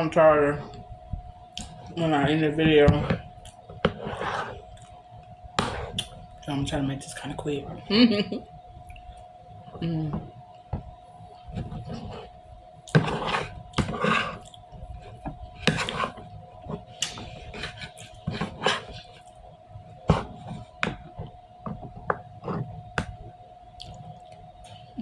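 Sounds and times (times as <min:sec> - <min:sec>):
steady hum: 0:00.0 - 0:25.0
person chewing wetly: 0:03.4 - 0:06.2, 0:11.4 - 0:21.1, 0:23.1 - 0:24.9.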